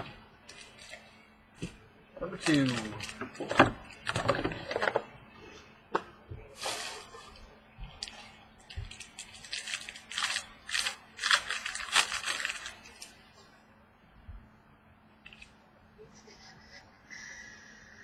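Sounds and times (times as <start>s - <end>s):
wrapper tearing and crinkling: 2.4s - 3.2s, 8.9s - 13.2s.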